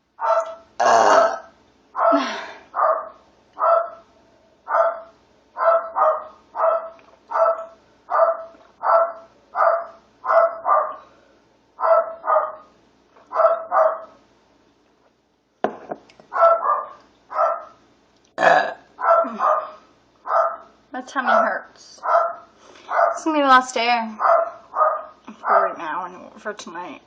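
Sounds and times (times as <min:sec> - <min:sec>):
dog barking: 0:00.2 - 0:00.7, 0:02.0 - 0:11.1, 0:11.8 - 0:12.7, 0:13.3 - 0:14.2, 0:16.3 - 0:17.8, 0:19.0 - 0:23.2, 0:24.2 - 0:25.8.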